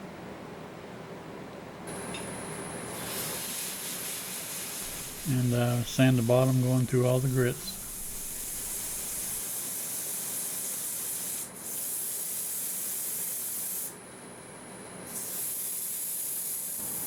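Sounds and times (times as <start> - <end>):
sandpaper hissing on spinning wood: 3.0 - 13.9.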